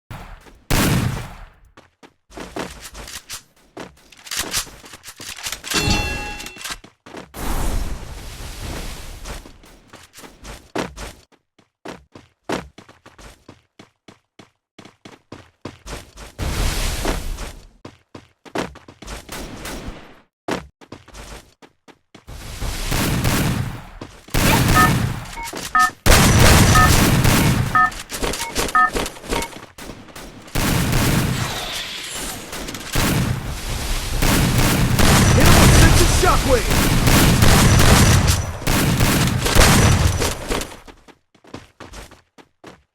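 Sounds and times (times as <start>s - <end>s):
metallic ding: 5.8s - 6.6s
short electronic beeps: 5.8s - 6.8s, 24.4s - 29.6s
video game gunfire: 22.8s - 40.8s.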